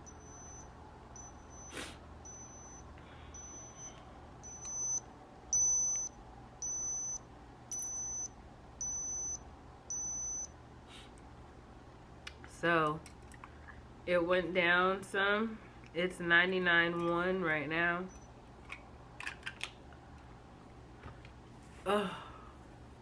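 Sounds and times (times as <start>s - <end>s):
thermometer beeping: 0.0s - 10.6s.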